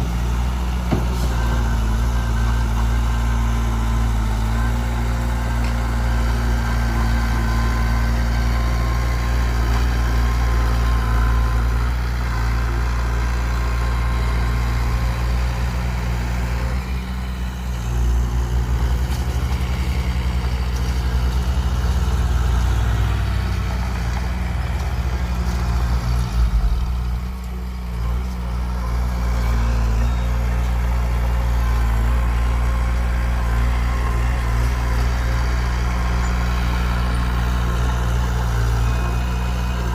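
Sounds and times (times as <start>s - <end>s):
heavy diesel engine running: 0.0s - 39.9s.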